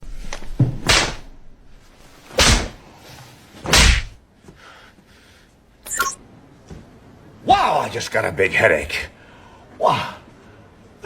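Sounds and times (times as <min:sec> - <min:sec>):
heavy punch thuds with swish: 0:00.8 - 0:01.3, 0:02.4 - 0:02.8, 0:03.7 - 0:04.2.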